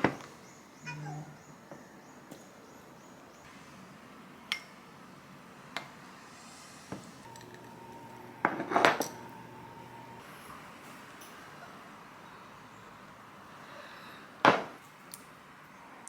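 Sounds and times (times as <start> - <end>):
dishes and cutlery clinking: 7.2 - 9.8.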